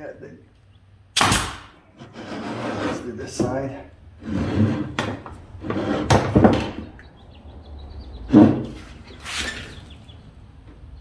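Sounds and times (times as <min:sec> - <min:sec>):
nails hammered into wood: 0:01.2 - 0:01.8.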